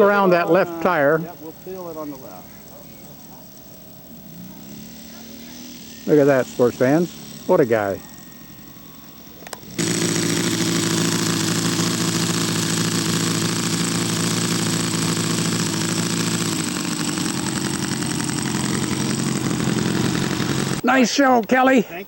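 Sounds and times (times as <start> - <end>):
model airplane engine running: 0.0 - 20.8.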